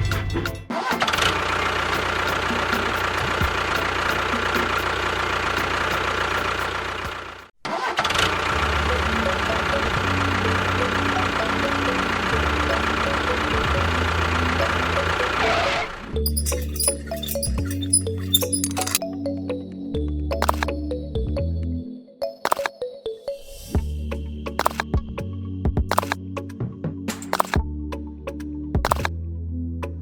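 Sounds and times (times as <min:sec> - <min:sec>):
small motor running: 0:08.3 - 0:19.0
low hum stepping up and down: 0:08.4 - 0:19.0.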